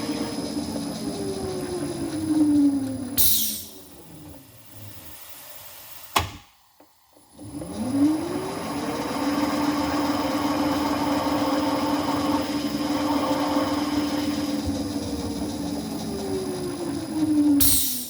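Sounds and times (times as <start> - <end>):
electric spindle motor whining: 0.0 - 3.2, 7.4 - 17.6.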